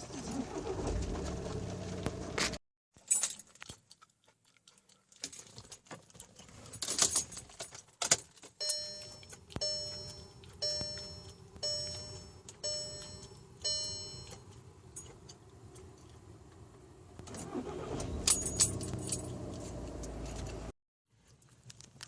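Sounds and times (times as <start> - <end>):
car keys jangling: 6.7 - 15.4, 17.3 - 20.7
dashboard warning chime: 8.6 - 14.6.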